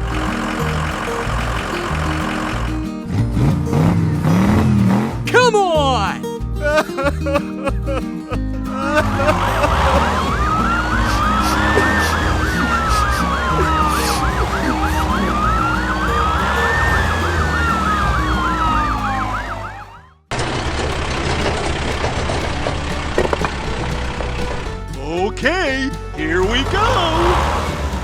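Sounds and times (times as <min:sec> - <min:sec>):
background music: 0:00.0 - 0:20.0, 0:23.6 - 0:28.0
siren slow wail: 0:08.8 - 0:20.2
siren fast yelp: 0:09.2 - 0:20.2.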